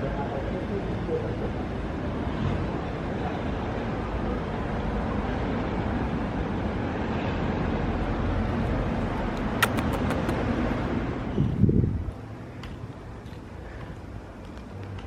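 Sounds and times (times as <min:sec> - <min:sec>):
sharp clicks: 0:09.4 - 0:10.5
wind buffeting microphone: 0:10.3 - 0:12.3.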